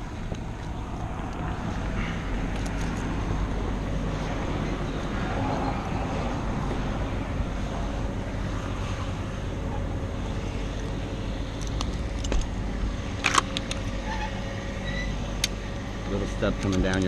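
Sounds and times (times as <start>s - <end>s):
engine running low: 0.0s - 17.0s.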